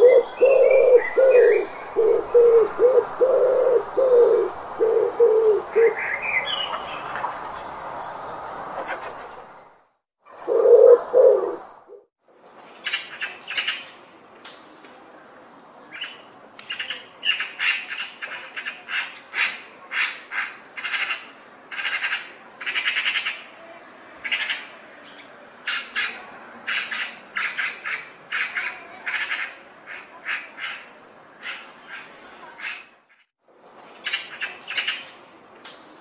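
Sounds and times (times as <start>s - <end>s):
lower call: 0.0s - 6.2s, 10.3s - 12.1s
high insect trill: 0.1s - 12.0s.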